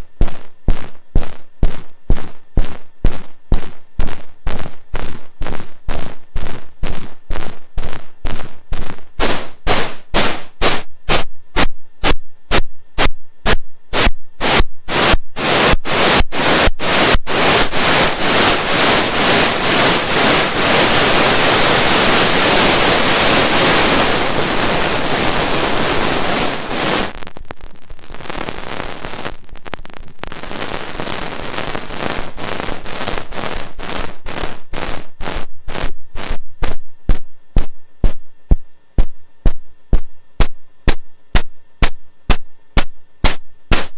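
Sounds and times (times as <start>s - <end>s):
electronic noise hits: 0.0s - 43.9s
static hiss: 0.0s - 43.9s.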